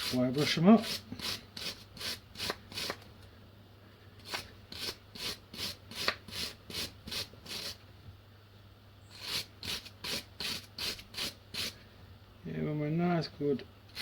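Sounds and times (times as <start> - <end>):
wire brush scrubbing rusty metal: 0.0 - 3.0, 4.2 - 7.8, 9.1 - 11.8.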